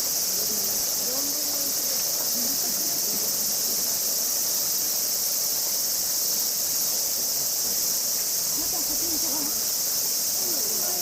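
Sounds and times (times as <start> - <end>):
faint voices of people: 0.0 - 4.2, 8.4 - 11.0
cicada chorus buzzing: 0.0 - 11.0.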